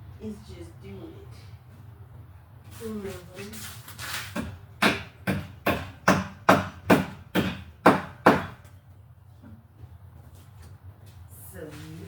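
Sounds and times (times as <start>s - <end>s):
hammer striking wood: 4.3s - 8.7s.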